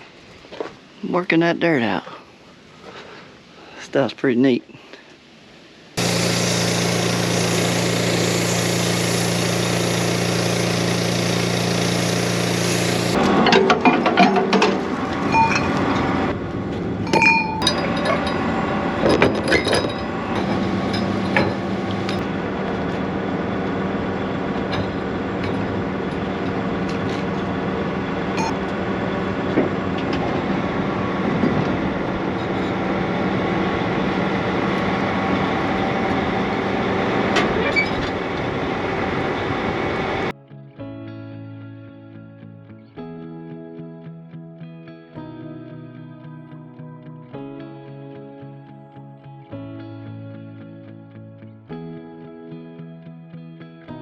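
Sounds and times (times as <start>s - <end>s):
engine running steadily: 6.0s - 40.3s
metallic clinks and knocks: 17.1s - 22.2s.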